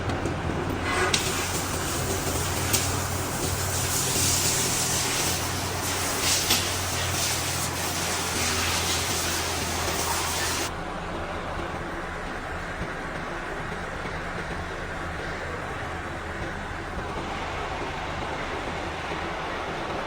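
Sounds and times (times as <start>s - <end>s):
machine hiss: 0.8s - 10.7s.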